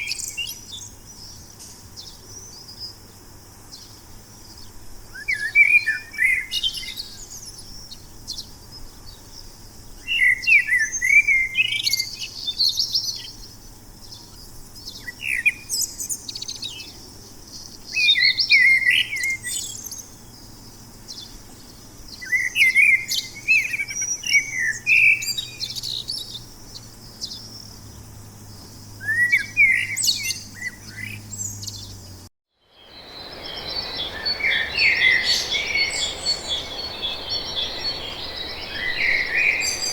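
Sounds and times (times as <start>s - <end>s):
busy birdsong: 0.0s - 39.9s
songbird warbling: 32.8s - 39.9s.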